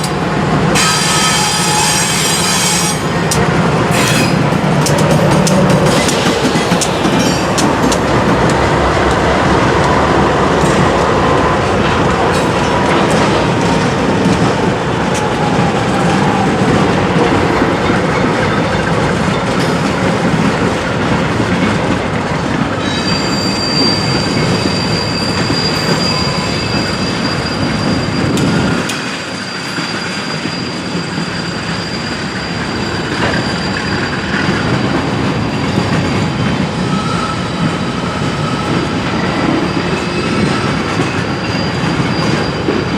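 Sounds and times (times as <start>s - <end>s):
freight train rumbling past: 0.0s - 42.9s
high wheel squeal: 0.8s - 4.5s, 22.8s - 34.6s, 35.7s - 42.9s.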